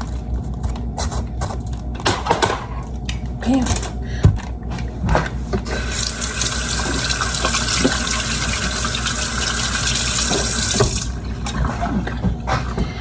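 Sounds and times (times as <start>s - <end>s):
tap running water into sink: 5.7s - 11.2s.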